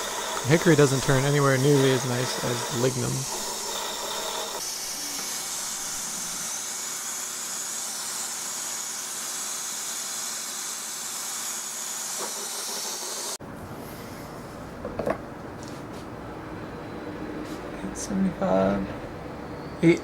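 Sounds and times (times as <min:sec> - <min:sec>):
hiss of tool cutting wood: 0:00.0 - 0:13.4
lathe running: 0:00.0 - 0:13.4.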